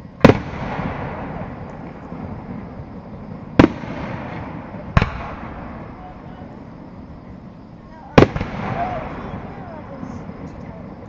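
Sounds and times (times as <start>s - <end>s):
fireworks crackling and rumbling: 0.0s - 11.0s
sharp firework bang: 0.2s - 1.7s, 3.6s - 6.1s, 8.1s - 9.7s.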